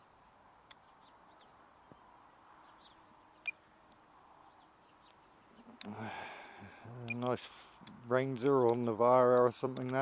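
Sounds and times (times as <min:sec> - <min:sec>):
small birds chirping: 0:00.0 - 0:10.0
light clicks: 0:08.6 - 0:10.0.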